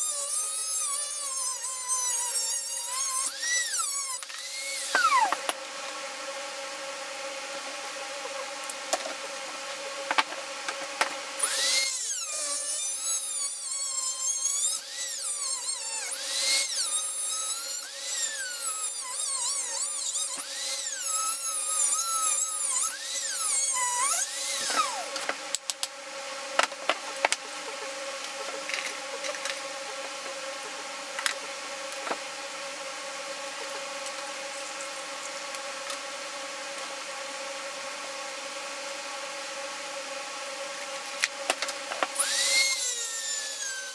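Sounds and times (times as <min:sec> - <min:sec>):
small power tool whining: 0:00.0 - 0:05.6, 0:11.4 - 0:25.3, 0:42.1 - 0:43.9.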